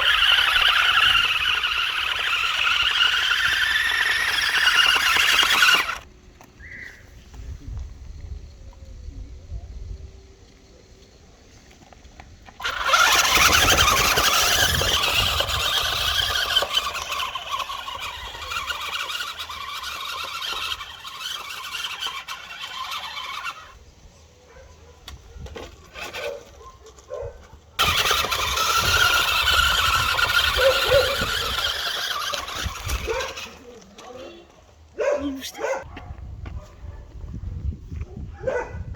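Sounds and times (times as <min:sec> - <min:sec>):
rc car motor whining: 0:00.0 - 0:06.1, 0:12.4 - 0:24.0, 0:25.1 - 0:34.7.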